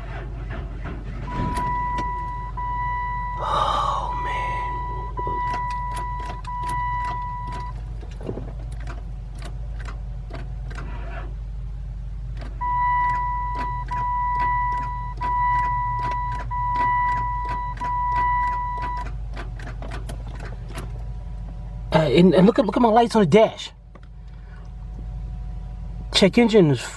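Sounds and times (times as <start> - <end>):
low steady hum: 0.0 - 26.9
car electronic warning tone: 1.2 - 7.8, 12.6 - 19.1
regular ticking clicks: 4.2 - 10.8, 12.3 - 21.6.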